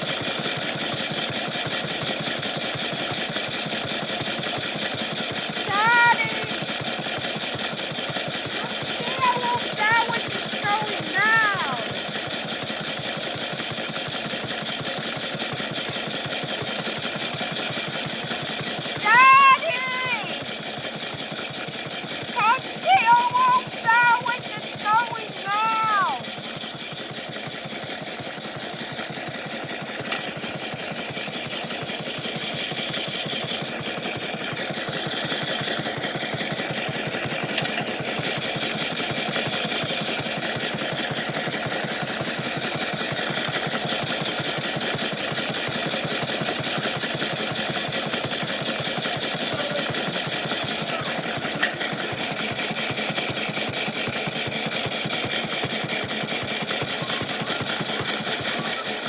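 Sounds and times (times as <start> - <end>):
washing machine rattling: 5.0 - 12.8, 22.2 - 26.9.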